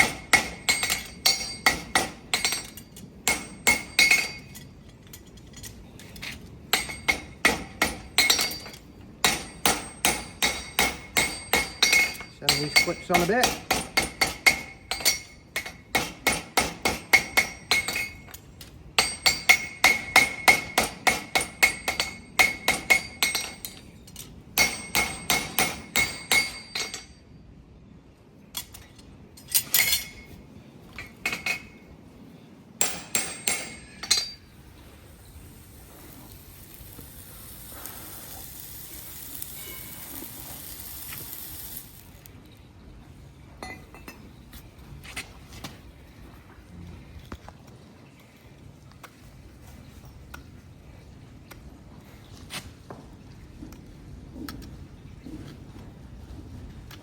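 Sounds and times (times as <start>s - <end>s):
hammer striking horseshoe on anvil: 0.0s - 27.2s, 28.6s - 31.9s, 32.8s - 34.6s, 43.6s - 44.3s
steady hiss: 33.6s - 42.6s.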